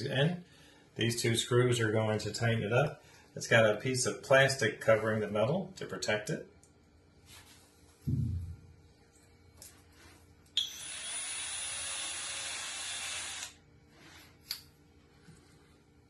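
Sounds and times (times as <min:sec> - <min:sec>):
cordless drill driving a screw: 0:10.6 - 0:13.6.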